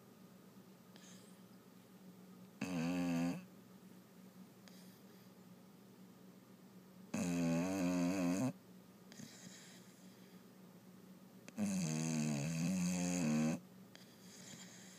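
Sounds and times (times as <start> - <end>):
dog breathing softly: 0.9 - 1.5, 4.6 - 5.4, 9.1 - 10.5, 13.9 - 14.9
dog snoring: 2.6 - 3.5, 7.1 - 10.0, 11.5 - 14.9.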